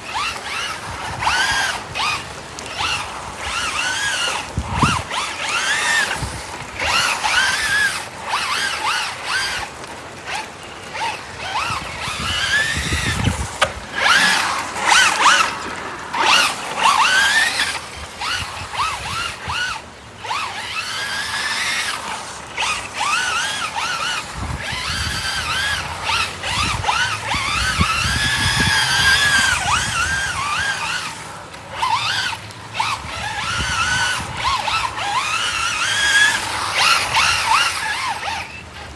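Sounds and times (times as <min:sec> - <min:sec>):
rc car motor whining: 0:00.0 - 0:38.9
rain hissing: 0:13.4 - 0:17.6.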